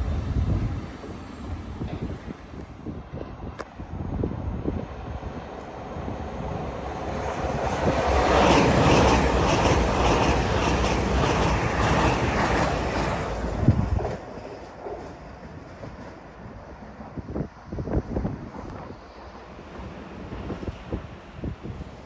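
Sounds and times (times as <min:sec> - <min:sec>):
train passing at speed: 0:00.0 - 0:22.0
wheels clattering over rails: 0:06.0 - 0:14.7.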